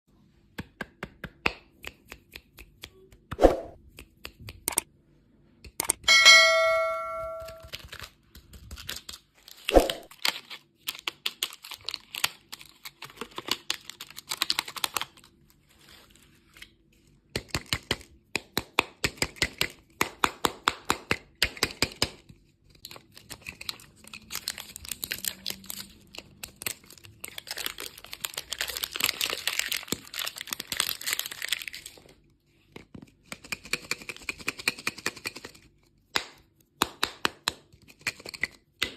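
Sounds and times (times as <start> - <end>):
short ringing ding: 6.0 - 7.6
plastic wrappers crinkling: 7.6 - 16.8, 22.7 - 32.2
wrapper tearing: 7.7 - 16.7, 22.8 - 32.1.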